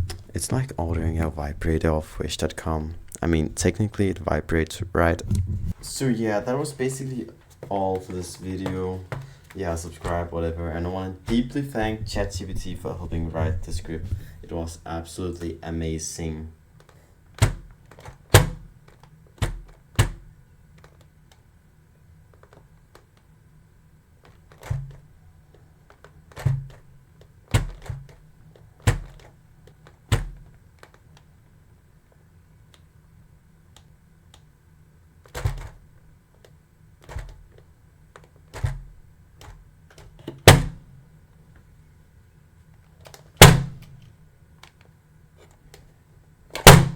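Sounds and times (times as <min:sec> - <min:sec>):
hard taps and thunks: 0:07.3 - 0:10.3, 0:11.3 - 0:14.4, 0:17.4 - 0:18.7, 0:26.3 - 0:26.9, 0:27.5 - 0:28.2, 0:28.8 - 0:29.3, 0:38.5 - 0:40.9, 0:43.4 - 0:44.0, 0:46.6 - 0:46.9.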